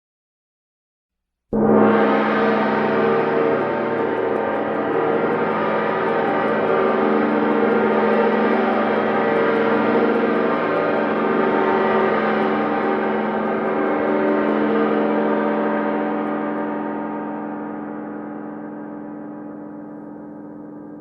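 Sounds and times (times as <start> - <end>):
long metallic ringing: 1.6 - 17.8.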